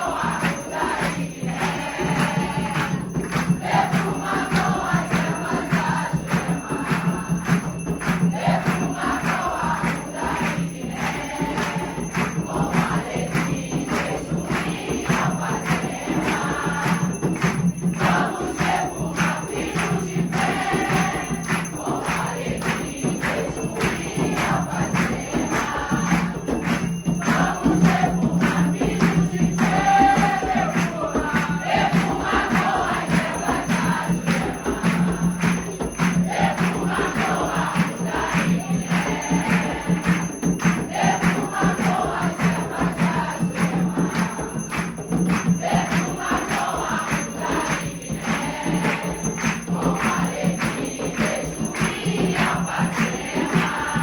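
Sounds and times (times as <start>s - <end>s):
fast percussion with jingling: 0.0s - 54.0s
group singing a chant: 0.0s - 54.0s.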